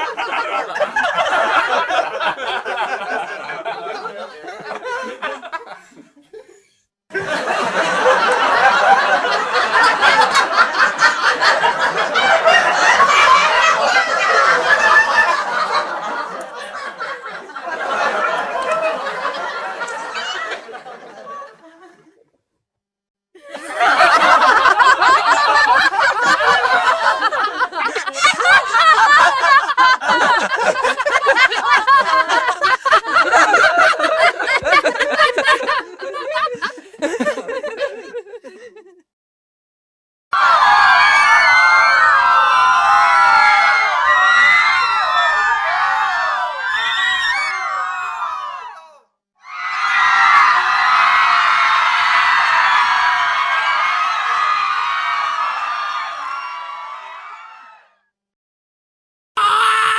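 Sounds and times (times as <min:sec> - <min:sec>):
crowd chattering and laughing: 0:00.0 - 0:22.2, 0:23.4 - 0:39.0.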